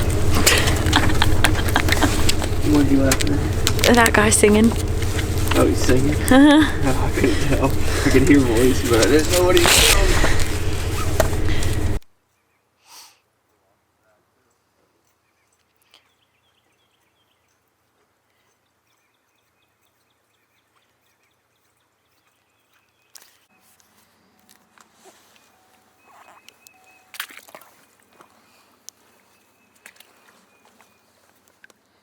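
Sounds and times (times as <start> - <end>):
knocks and rustles of handling: 0.0 - 12.0.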